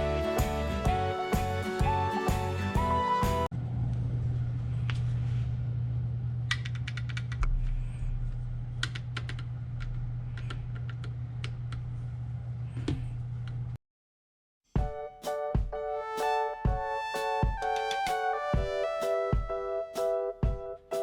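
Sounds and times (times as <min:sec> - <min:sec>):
steady low hum: 0:02.8 - 0:13.8.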